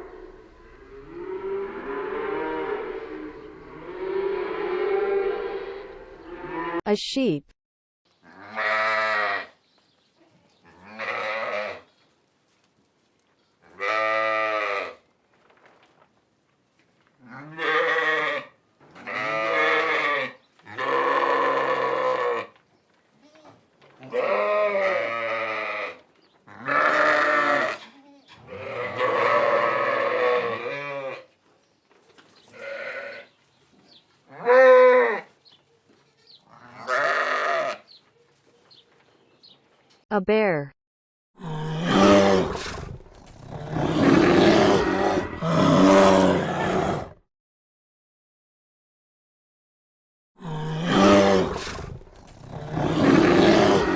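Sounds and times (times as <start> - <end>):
sheep bleating: 8.2 - 9.5, 10.7 - 11.8, 13.7 - 15.0, 17.2 - 22.5, 23.2 - 31.2, 32.6 - 33.3, 36.1 - 37.8.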